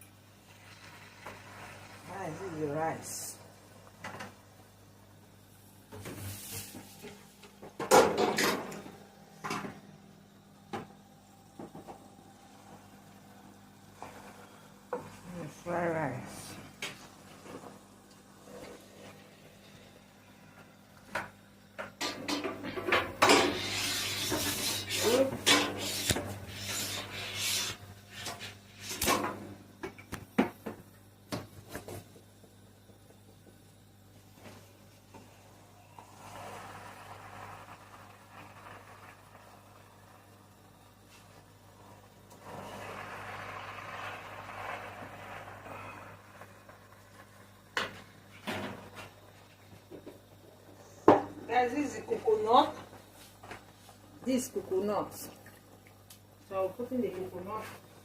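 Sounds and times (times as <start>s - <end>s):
utensil scraping rice in pan: 23.2s - 29.2s, 42.3s - 46.2s.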